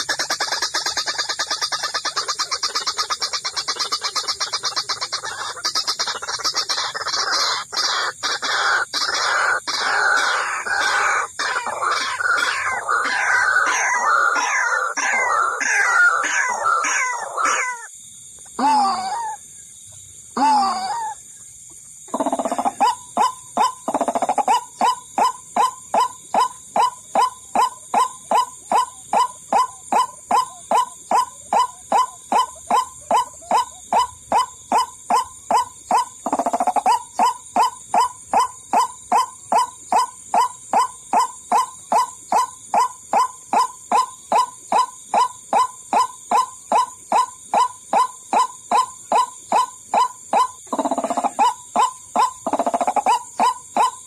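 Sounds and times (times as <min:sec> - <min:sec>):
waterhen calling: 0:00.0 - 0:17.9.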